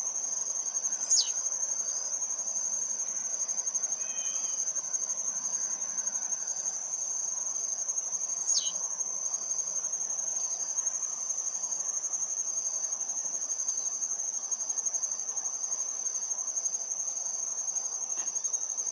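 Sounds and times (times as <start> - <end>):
insect high pulsing trill: 0.0 - 18.9
insect short chirps: 0.6 - 2.0, 4.0 - 4.7, 8.2 - 8.8.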